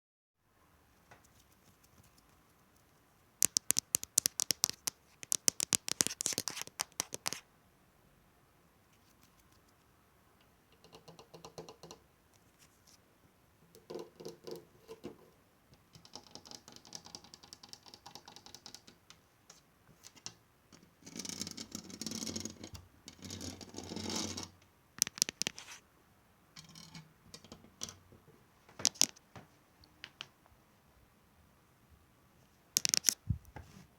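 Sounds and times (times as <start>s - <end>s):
tapping and scratching on objects: 1.1s - 7.4s, 15.8s - 25.8s, 28.7s - 29.2s, 32.8s - 33.7s
sharp clicks: 3.4s - 7.4s, 25.0s - 25.6s, 28.8s - 29.2s.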